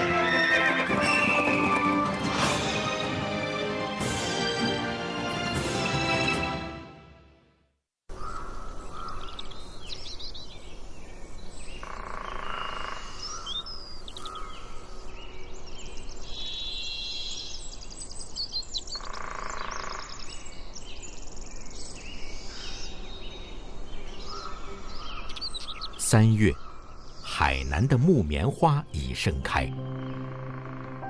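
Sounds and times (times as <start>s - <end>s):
birds chirping and trilling: 8.1s - 31.0s.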